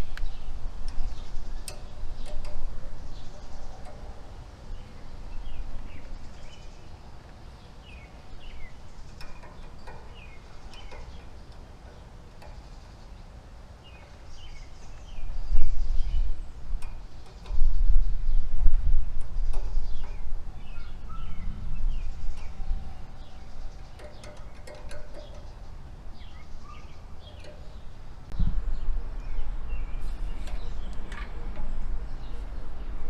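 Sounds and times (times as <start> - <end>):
low rumbling noise: 0.0 - 33.0
small birds chirping: 0.0 - 33.0
sharp clicks: 0.1 - 2.7, 9.1 - 12.8, 23.7 - 25.8.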